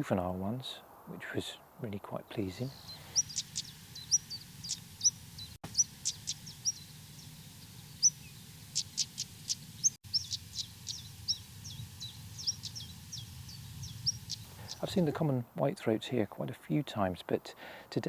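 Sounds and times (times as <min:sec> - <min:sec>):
birds whistling and clicking: 0:02.6 - 0:14.9.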